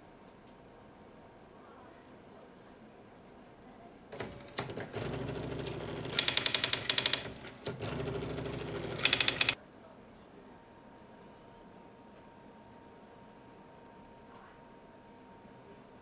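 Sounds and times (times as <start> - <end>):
typebars striking paper: 4.2 - 9.6
typewriter motor humming: 4.2 - 9.6.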